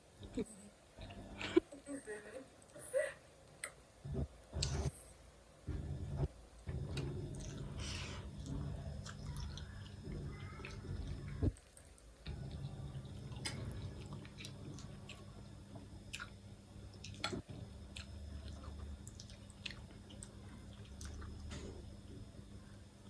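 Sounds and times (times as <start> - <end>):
steady low hum: 0.0 - 23.0
person chewing noodles: 6.8 - 21.5.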